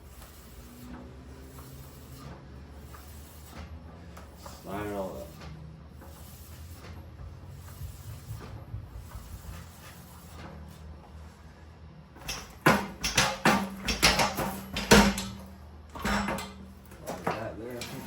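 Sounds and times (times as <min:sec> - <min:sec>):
sharp metallic knocks and clunks: 0:12.2 - 0:18.0.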